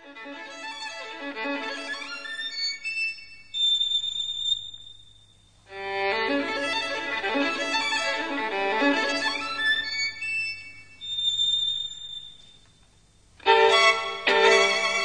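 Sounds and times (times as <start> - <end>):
violin playing quick melody: 13.4 - 15.0.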